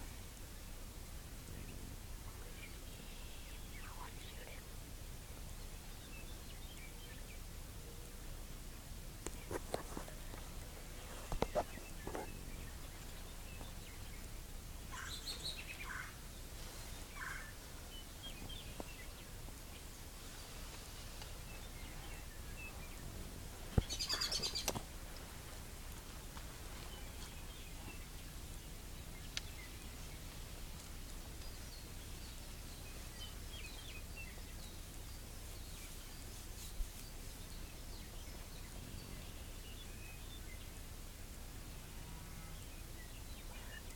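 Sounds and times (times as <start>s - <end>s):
small birds chirping: 0.1s - 8.1s, 9.2s - 43.9s.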